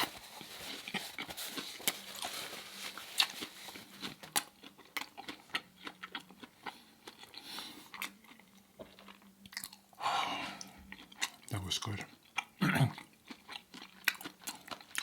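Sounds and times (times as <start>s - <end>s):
wet chewing and mouth smacks: 3.2s - 9.9s, 10.6s - 15.0s.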